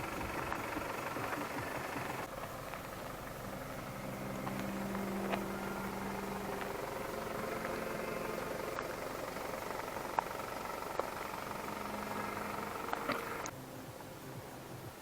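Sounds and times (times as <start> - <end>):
vehicle engine and road hum: 0.0 - 14.4
sharp clicks: 4.3 - 13.5.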